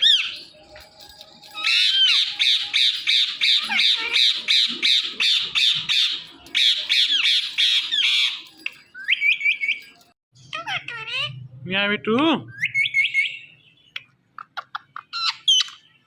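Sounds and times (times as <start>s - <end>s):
parakeet squawking: 0.0s - 0.4s, 1.6s - 8.5s, 10.4s - 11.4s, 12.5s - 15.9s.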